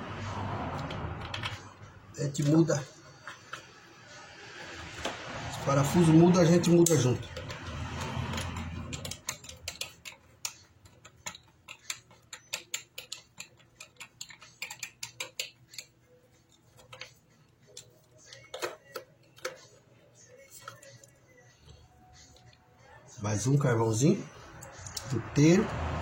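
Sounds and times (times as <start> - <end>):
scattered clicks and taps: 0.7 - 1.8, 6.8 - 19.7
hand tools clicking on housing: 8.2 - 15.9, 16.8 - 19.7.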